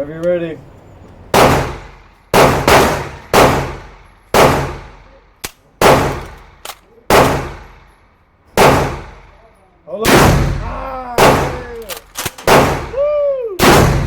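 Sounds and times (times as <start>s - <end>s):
shotgun shots ringing: 1.3s - 5.2s, 5.8s - 8.0s, 8.6s - 9.4s, 10.0s - 13.0s, 13.6s - 14.0s.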